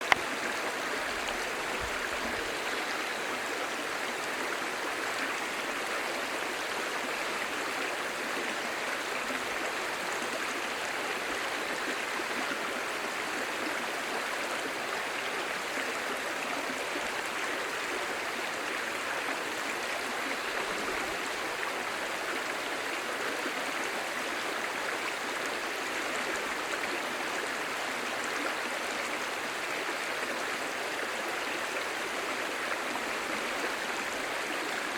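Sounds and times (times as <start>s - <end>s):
stream babbling over stones: 0.0s - 34.9s.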